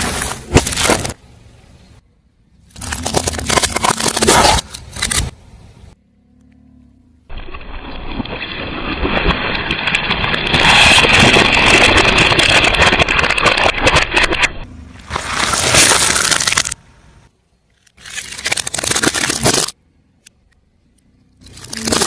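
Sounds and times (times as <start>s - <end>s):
objects crunching under tyres: 0.0s - 1.2s, 2.7s - 5.4s, 7.3s - 16.8s
loud sudden crunch: 7.3s - 16.8s.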